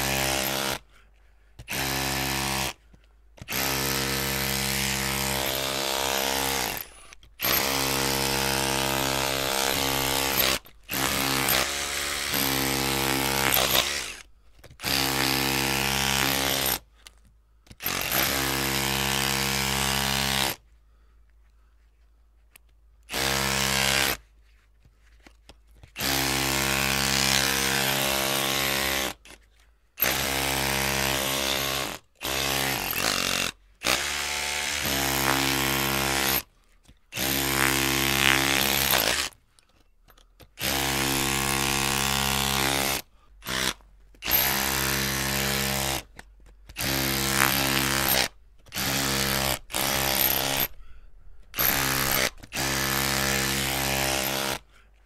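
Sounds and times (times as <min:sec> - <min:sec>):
electric drill motor whining: 0:03.5 - 0:16.8, 0:46.8 - 0:50.8, 0:51.6 - 0:54.6.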